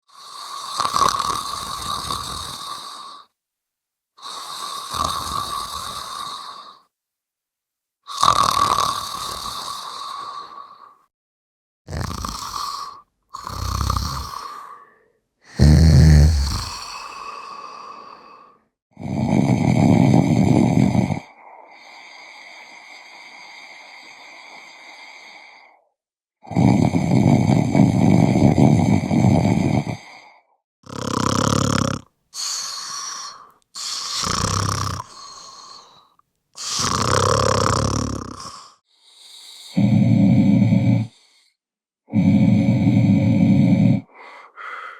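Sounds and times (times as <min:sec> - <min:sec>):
person snoring: 0:00.1 - 0:03.3, 0:04.2 - 0:06.9, 0:08.1 - 0:11.0, 0:11.9 - 0:44.9
drawn-out breath: 0:12.3 - 0:18.7, 0:21.2 - 0:25.9, 0:32.4 - 0:40.0, 0:43.9 - 0:44.9.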